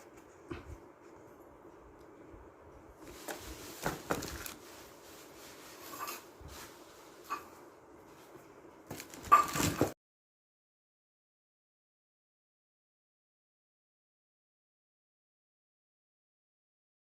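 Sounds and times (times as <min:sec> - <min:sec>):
handling knocks and rubs: 0:03.0 - 0:10.0.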